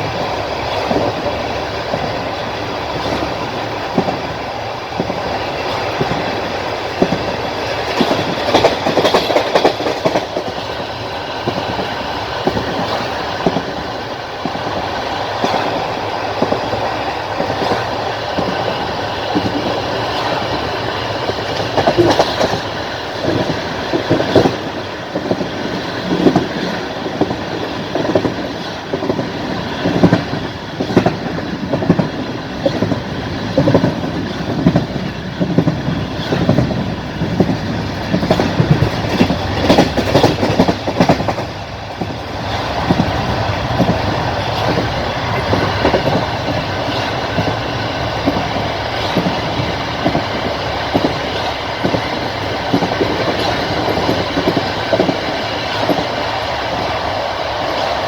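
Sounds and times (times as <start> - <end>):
train rolling rumble: 0.0 - 58.0
wheels clattering over rail joints: 11.4 - 56.9.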